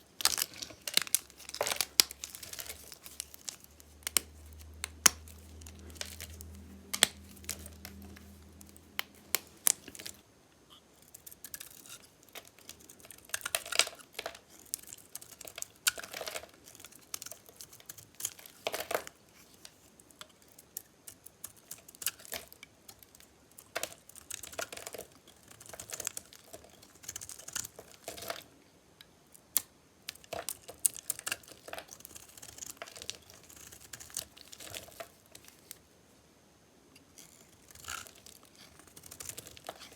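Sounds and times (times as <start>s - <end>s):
blade cutting dry soap: 37.1s - 39.9s.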